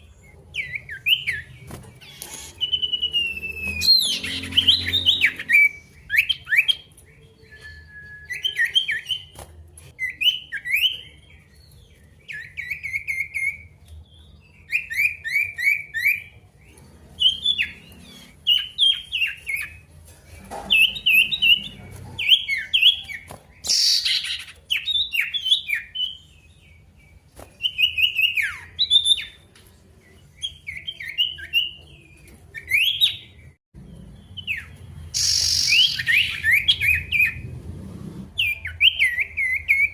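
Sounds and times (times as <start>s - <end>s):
songbird whistling song: 0.0s - 19.9s, 20.6s - 37.5s, 38.4s - 39.9s.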